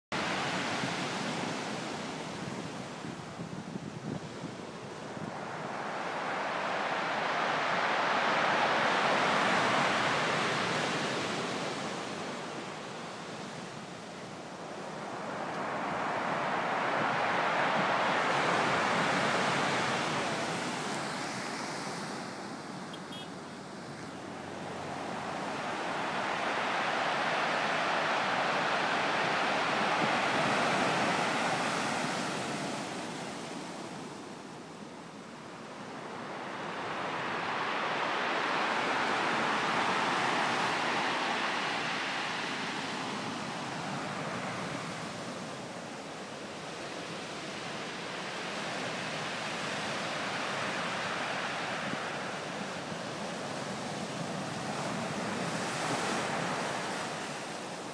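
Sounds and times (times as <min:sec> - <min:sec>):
wind: 0:00.0 - 0:57.9
storm surf breaking: 0:03.2 - 0:46.0.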